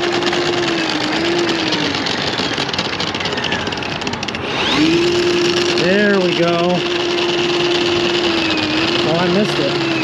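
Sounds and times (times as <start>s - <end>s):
drain snake cable rattle: 0.0s - 9.7s
drain snake motor whine: 0.0s - 10.0s.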